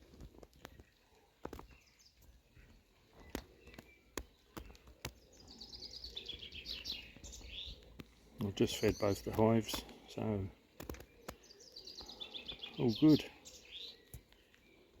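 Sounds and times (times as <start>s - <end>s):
light clicks and taps: 0.0s - 2.3s, 3.0s - 5.6s
small bird chirping: 0.0s - 15.0s.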